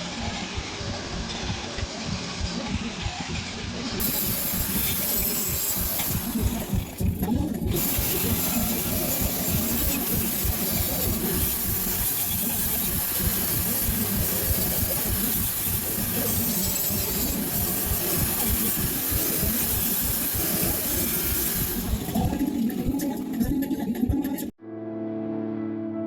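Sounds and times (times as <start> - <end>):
arc welding crackling hiss: 3.9 - 23.3.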